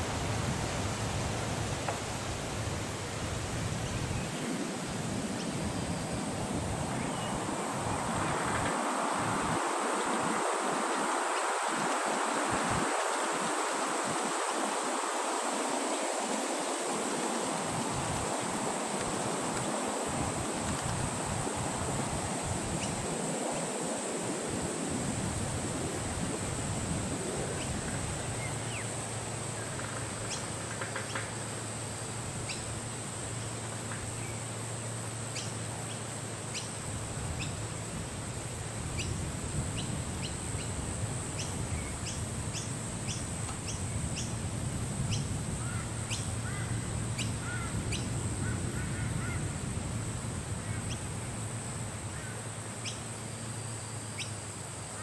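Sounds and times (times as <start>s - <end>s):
wind blowing: 0.0s - 33.9s.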